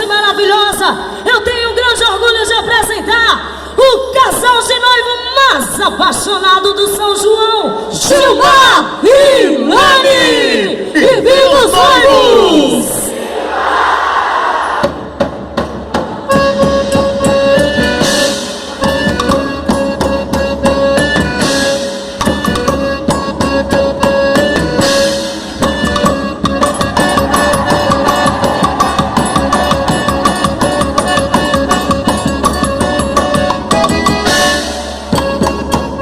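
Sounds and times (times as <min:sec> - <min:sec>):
instrumental dance music with drums: 0:14.8 - 0:36.0.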